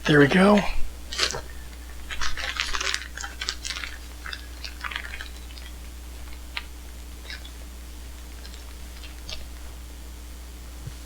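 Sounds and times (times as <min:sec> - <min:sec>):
packaging crinkling and rustling: 0:01.2 - 0:05.7.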